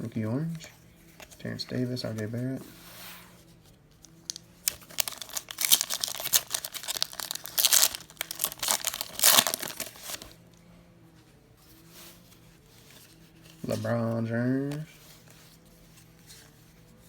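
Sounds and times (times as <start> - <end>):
wrapper tearing and crinkling: 4.3 - 10.4.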